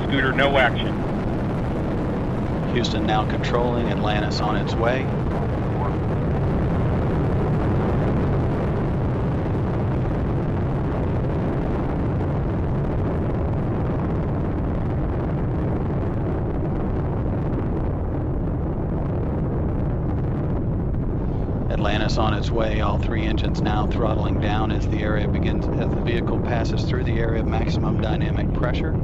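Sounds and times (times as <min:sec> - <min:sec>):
rocket engines roaring: 0:00.0 - 0:29.0.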